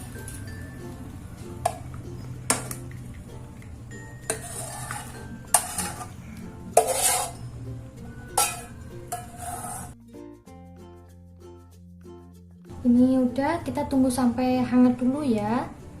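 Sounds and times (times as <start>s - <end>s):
metal pot clinking on a cup rim: 4.2s - 6.2s, 6.8s - 7.4s, 8.3s - 10.0s.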